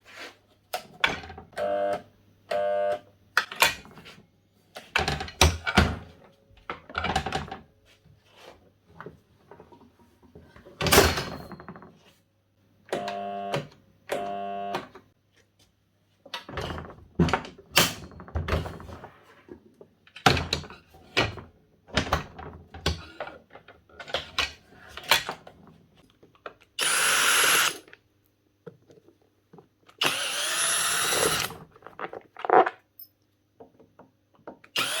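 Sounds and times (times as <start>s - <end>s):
saw motor humming: 26.8s - 27.8s, 30.0s - 31.6s, 34.8s - 35.0s.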